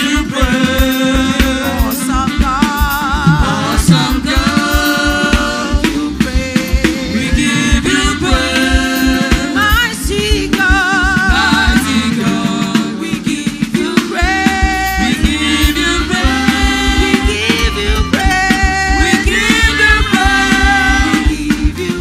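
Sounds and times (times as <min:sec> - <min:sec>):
band with drums and bass: 0:00.0 - 0:22.0
person singing with vibrato: 0:00.0 - 0:22.0.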